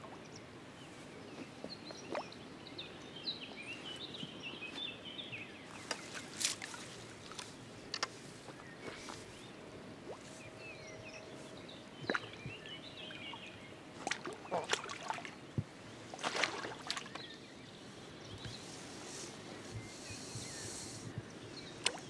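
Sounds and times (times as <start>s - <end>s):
water splashes: 12.0s - 15.4s, 16.1s - 17.2s, 21.8s - 22.0s.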